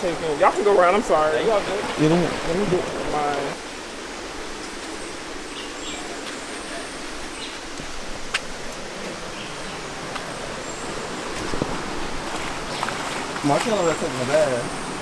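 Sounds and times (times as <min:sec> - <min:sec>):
river flowing over rocks: 0:00.0 - 0:04.4.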